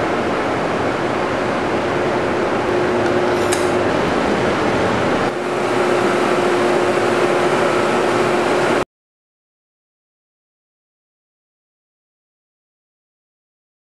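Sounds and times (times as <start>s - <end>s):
machine hum and hiss: 0.0s - 8.8s.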